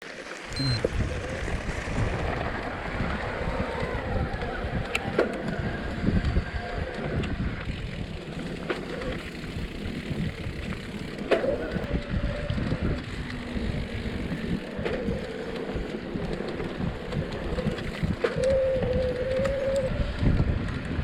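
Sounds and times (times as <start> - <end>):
wind on microphone: 0.5 - 8.4, 9.5 - 21.0
bike tyres rumbling on dirt: 0.9 - 21.0
bike clacking over bumps: 12.5 - 19.8.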